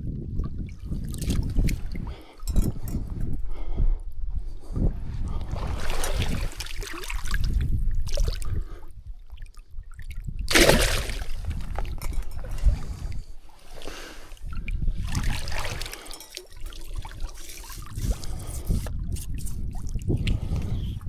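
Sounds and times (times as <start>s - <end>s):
water splashing and sloshing: 0.0s - 3.2s, 4.6s - 21.0s
wind rumble on microphone: 0.0s - 16.0s, 16.7s - 21.0s.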